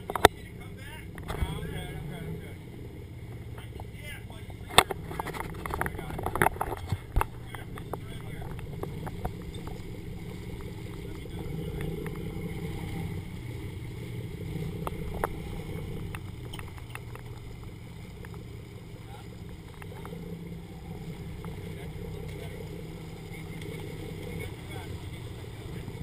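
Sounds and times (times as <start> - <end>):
small clicks and knocks: 0.0 - 0.3, 4.6 - 9.9, 16.0 - 18.5
boat engines rumbling: 0.0 - 26.0
sea around the hull: 0.0 - 26.0.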